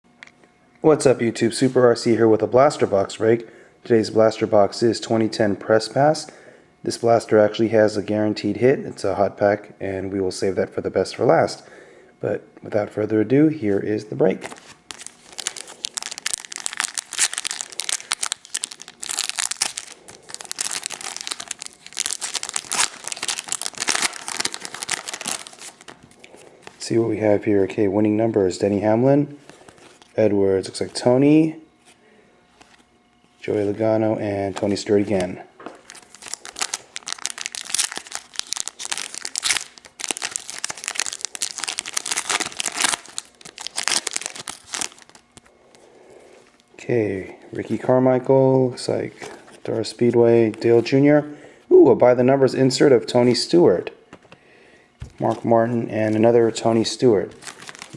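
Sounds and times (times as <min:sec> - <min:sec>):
foil wrapper crinkling and tearing: 0:14.4 - 0:26.5, 0:34.6 - 0:45.5, 0:57.3 - 0:57.9.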